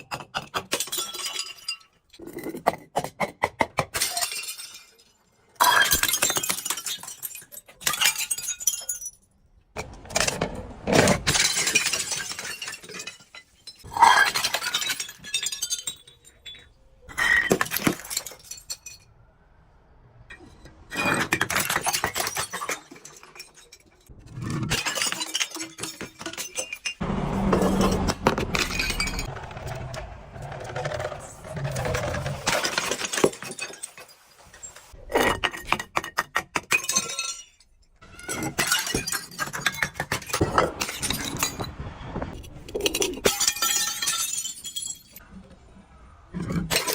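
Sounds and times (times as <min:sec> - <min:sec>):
glass bottles breaking and crunching: 0:00.0 - 0:19.2, 0:20.6 - 0:29.3, 0:30.8 - 0:41.8, 0:42.4 - 0:45.2, 0:46.4 - 0:46.9.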